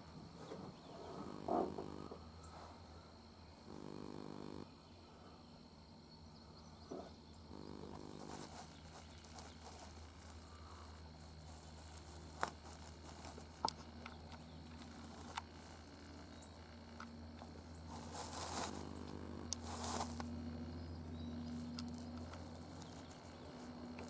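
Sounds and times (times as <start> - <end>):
quiet outdoor ambience: 0.0 - 24.0
low buzzing drone: 0.6 - 2.5, 3.6 - 5.3, 6.8 - 24.0.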